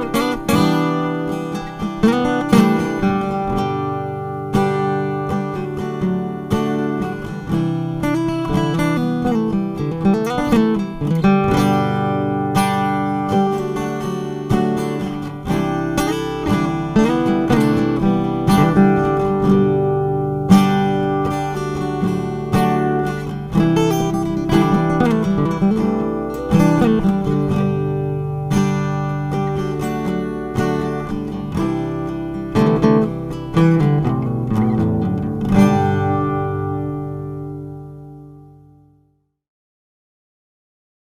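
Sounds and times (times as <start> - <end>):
acoustic guitar music: 0.0 - 39.3.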